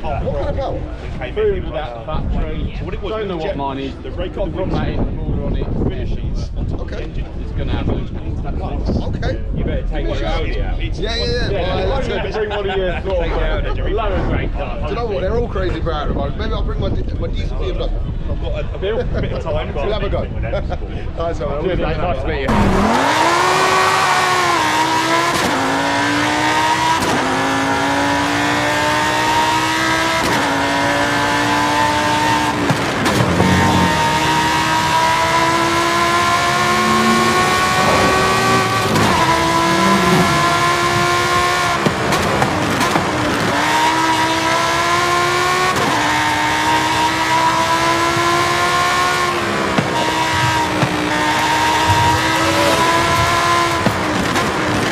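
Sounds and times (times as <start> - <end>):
car engine revving through gears: 22.5 - 54.9.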